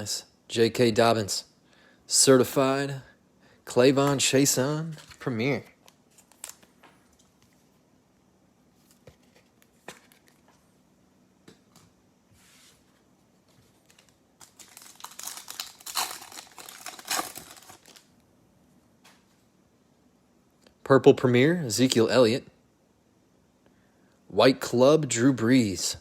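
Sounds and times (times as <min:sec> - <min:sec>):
foil wrapper crinkling and tearing: 0:06.2 - 0:06.7, 0:13.8 - 0:18.1.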